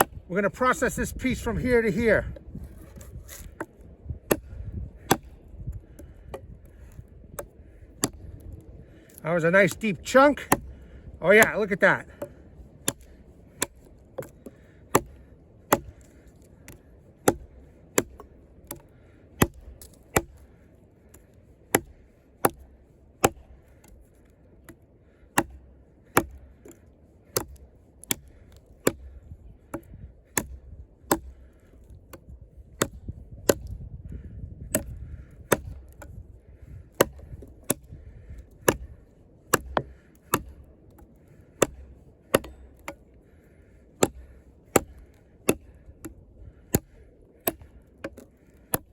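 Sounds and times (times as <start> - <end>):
knife chopping into log: 2.3 - 3.7, 4.3 - 5.4, 6.3 - 8.2, 9.7 - 10.8, 11.4 - 20.4, 21.7 - 24.0, 25.4 - 32.2, 32.8 - 33.7, 34.7 - 36.1, 37.0 - 40.6, 41.5 - 43.0, 44.0 - 48.9.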